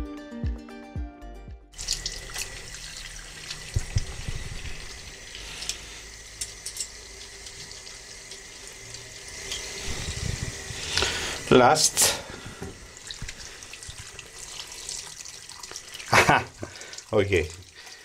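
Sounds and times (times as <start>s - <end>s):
music: 0.0s - 1.8s
small splashes: 1.8s - 5.8s, 10.7s - 18.0s
tap water running into sink: 1.8s - 18.0s.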